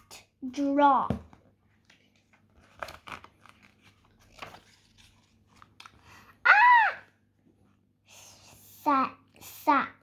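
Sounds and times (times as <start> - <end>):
paper page rustling: 1.8 - 6.3.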